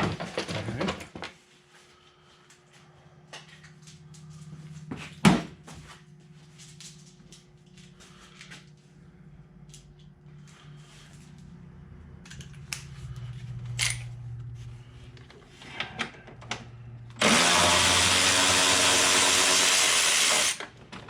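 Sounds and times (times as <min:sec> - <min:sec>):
steady low hum: 0:00.5 - 0:17.2.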